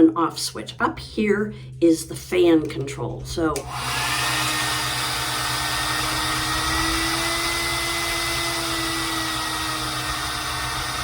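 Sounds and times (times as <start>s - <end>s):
hair dryer running: 3.6s - 11.0s.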